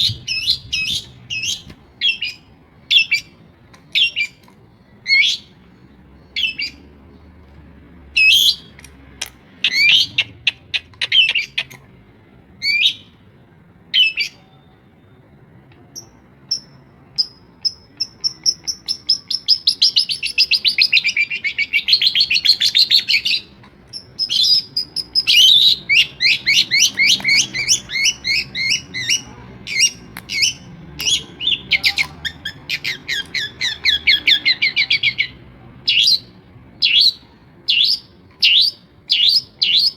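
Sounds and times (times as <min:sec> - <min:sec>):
shrike singing: 0:00.0 - 0:05.6, 0:13.9 - 0:39.9.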